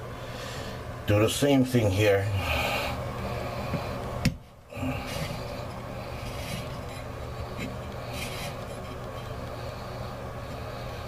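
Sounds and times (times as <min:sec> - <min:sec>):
valve rubbing and scraping: 0:04.9 - 0:10.0.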